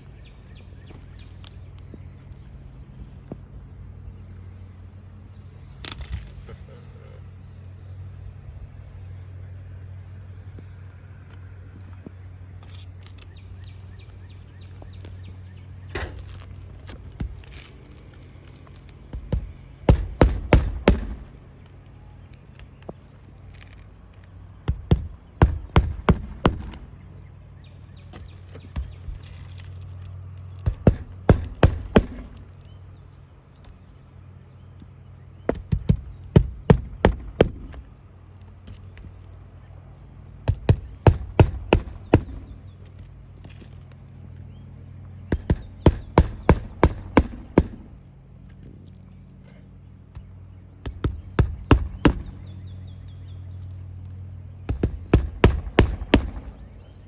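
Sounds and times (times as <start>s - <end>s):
steady low hum: 0.0s - 57.0s
hammer driving nails: 19.4s - 21.4s, 30.6s - 32.6s.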